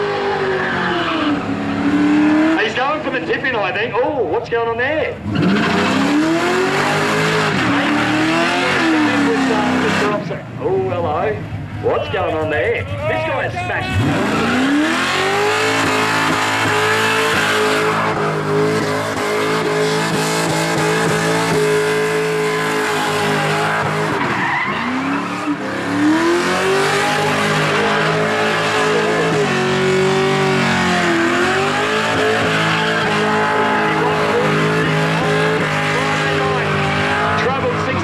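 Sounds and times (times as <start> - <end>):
car engine at high revs: 0.0 - 4.3, 5.1 - 12.7, 13.6 - 38.0
tyres squealing: 11.9 - 38.0.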